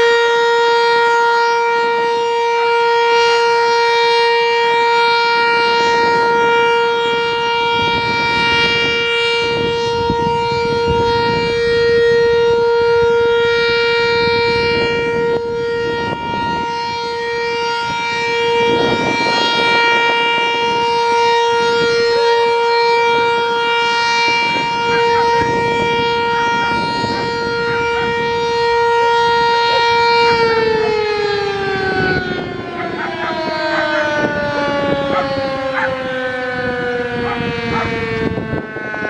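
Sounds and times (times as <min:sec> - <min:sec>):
warning siren steady tone: 0:00.0 - 0:39.0.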